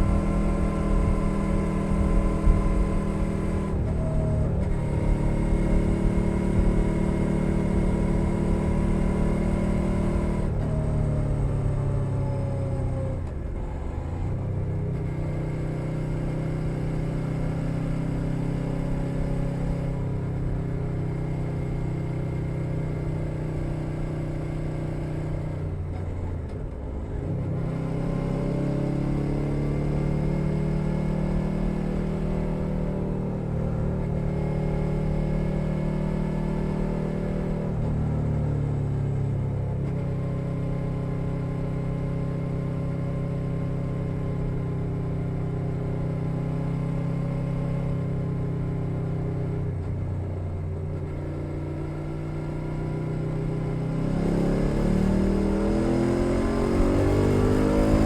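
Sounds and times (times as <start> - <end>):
motorcycle engine revving: 0.0 - 13.1, 27.4 - 58.0.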